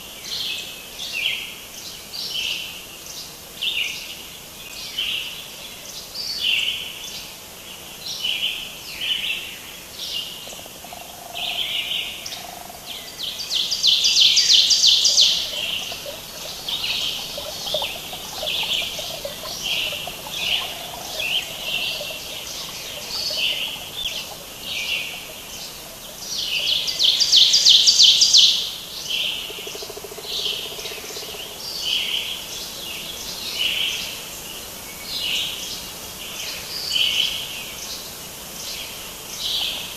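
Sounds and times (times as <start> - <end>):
birds chirping: 13.7 - 28.5
bird rapid trills: 14.1 - 28.0.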